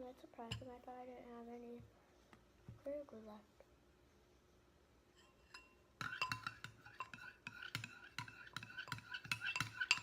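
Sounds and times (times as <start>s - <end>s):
spoon clinking against bowl: 5.2s - 10.0s.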